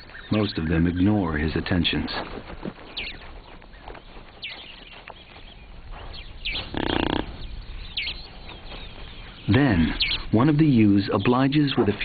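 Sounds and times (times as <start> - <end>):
high falling whistled bird calls: 2.8 - 11.8
rasping grunting animal call: 6.6 - 7.4.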